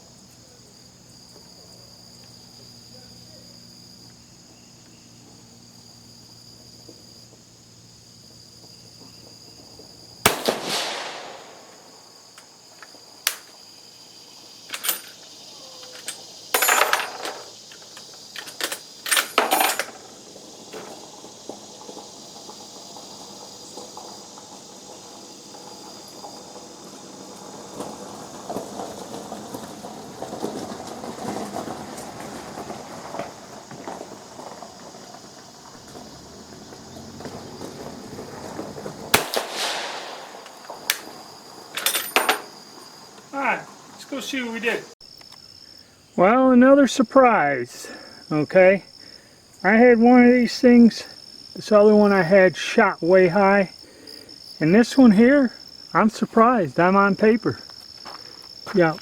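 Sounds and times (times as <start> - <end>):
rifle shot ringing: 10.3 - 12.1, 39.2 - 41.1.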